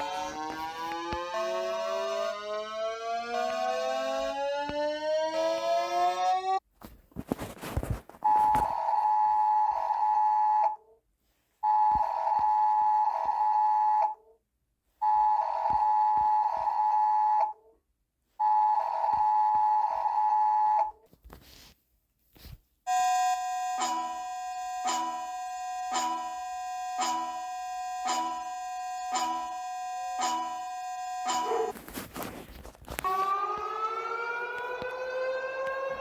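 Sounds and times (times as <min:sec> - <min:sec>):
two-tone alert tone: 0:22.9 - 0:31.7.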